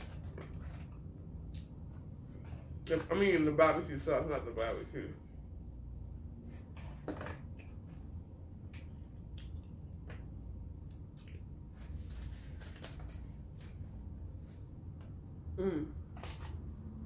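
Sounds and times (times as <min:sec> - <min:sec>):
low steady hum: 0:00.0 - 0:17.0
wet chewing and mouth smacks: 0:08.8 - 0:10.1, 0:10.8 - 0:11.6.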